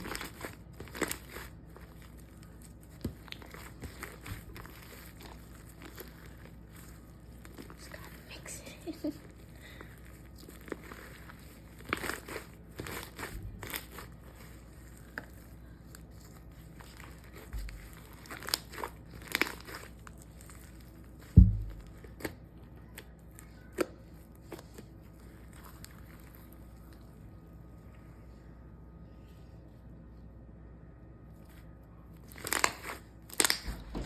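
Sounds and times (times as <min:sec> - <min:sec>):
slime crinkling and crackling: 0:00.0 - 0:27.9, 0:31.4 - 0:34.0
loud low thump: 0:21.4 - 0:21.9.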